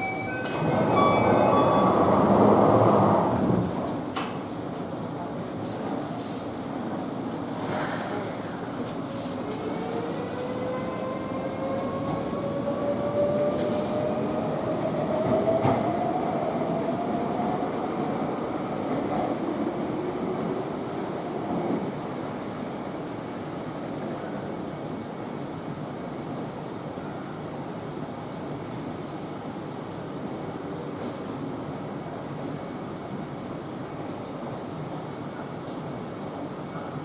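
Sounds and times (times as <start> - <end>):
wheels rumbling on rail: 0.0 - 25.0.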